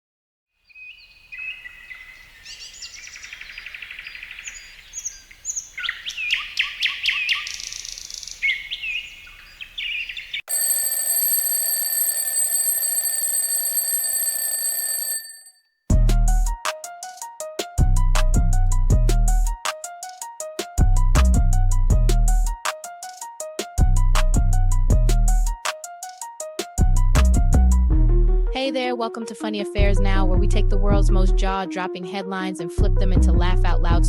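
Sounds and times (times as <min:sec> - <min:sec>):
birds chirping and trilling: 0:00.7 - 0:10.5
ringing alarm: 0:10.5 - 0:15.6.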